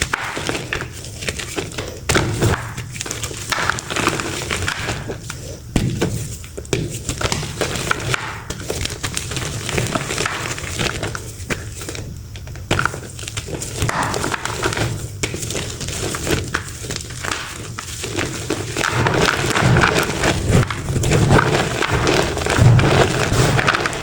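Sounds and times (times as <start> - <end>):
chalk crunching and crackling: 15.4 - 24.0.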